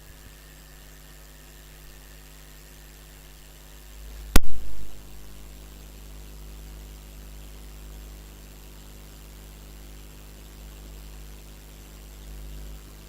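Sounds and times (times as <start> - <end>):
electrical hum with hiss: 0.0 - 13.0
brief thump: 4.4 - 5.0
sharp knock: 4.4 - 5.0.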